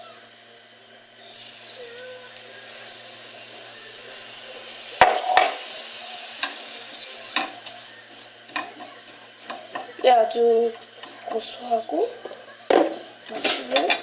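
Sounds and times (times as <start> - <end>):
sugar sizzling in a frying pan: 1.0 - 14.0
spoon knocking on a pan: 5.0 - 5.6.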